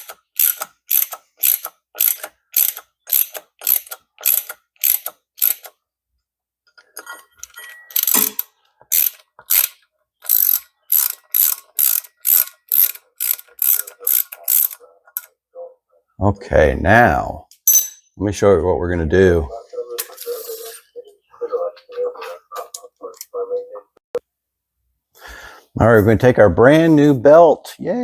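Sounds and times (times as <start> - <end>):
ratchet wrench clicking: 0.0 - 5.8, 8.0 - 15.3.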